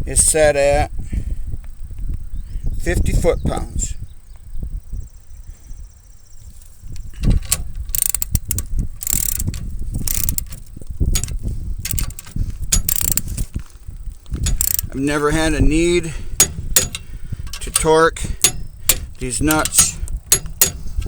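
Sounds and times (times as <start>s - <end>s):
torque wrench ratcheting clicks: 7.0s - 13.5s, 14.4s - 15.6s, 16.4s - 21.0s.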